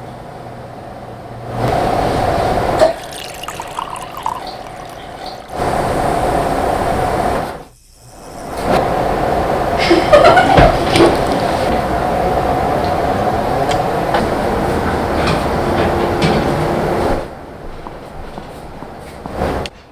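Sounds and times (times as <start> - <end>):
water running: 2.1 - 12.0
small water drips: 2.9 - 5.6.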